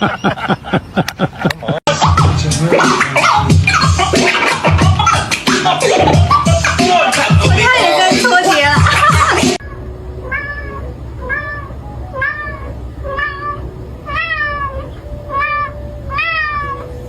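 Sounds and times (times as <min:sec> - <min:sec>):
low steady hum: 0:09.0 - 0:17.0
cat meowing: 0:09.6 - 0:17.0.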